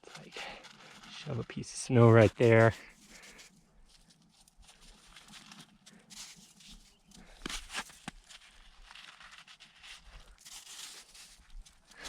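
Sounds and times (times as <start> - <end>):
dog crunching snow: 7.6 - 11.5.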